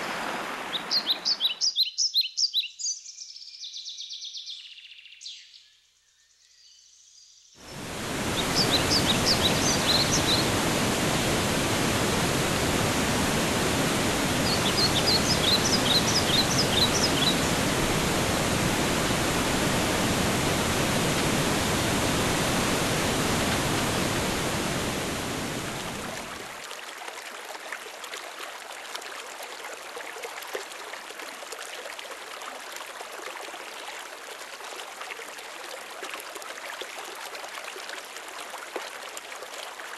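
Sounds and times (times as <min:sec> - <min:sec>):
rushing water: 0:00.0 - 0:01.7, 0:07.6 - 0:39.9
bird chirping: 0:00.7 - 0:07.3, 0:08.3 - 0:10.6, 0:14.4 - 0:17.7.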